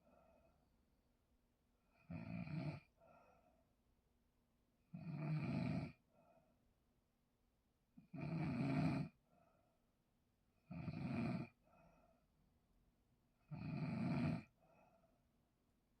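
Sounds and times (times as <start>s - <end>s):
faint breath: 0.0s - 0.7s, 2.9s - 3.8s, 6.1s - 6.7s, 9.2s - 9.9s, 11.6s - 12.4s, 14.6s - 15.3s
person snoring loudly: 5.0s - 6.0s, 8.1s - 9.2s, 10.7s - 11.6s, 13.5s - 14.5s.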